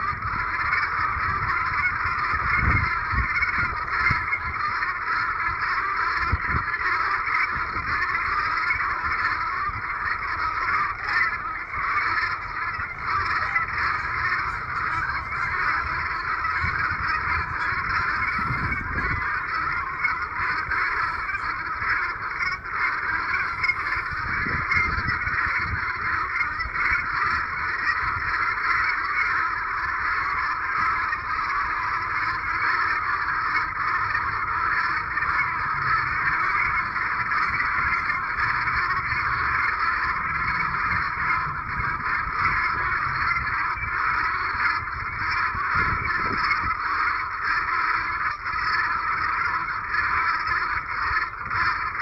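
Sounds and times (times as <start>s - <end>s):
geese honking: 0.0s - 52.0s.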